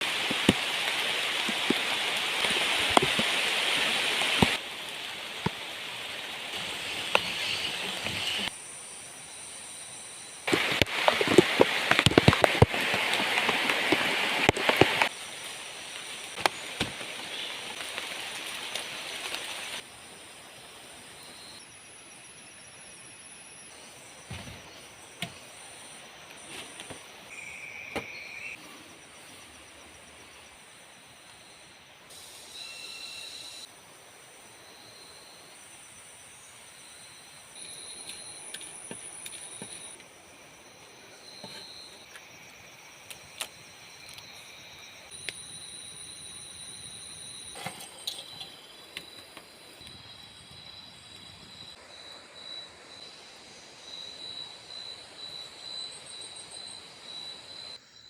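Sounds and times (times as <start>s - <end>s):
heavy rain hissing: 0.0s - 8.5s, 10.4s - 21.2s
insect trills: 0.1s - 58.0s.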